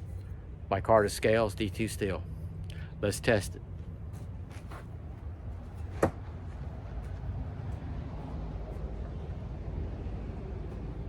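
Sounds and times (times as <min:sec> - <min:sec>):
low outdoor rumble: 0:00.0 - 0:11.0
thrown knife hitting target: 0:05.9 - 0:06.3.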